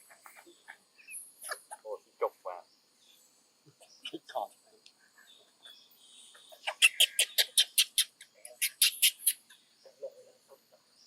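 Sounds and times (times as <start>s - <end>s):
high-pitched animal chirps: 6.6s - 9.5s.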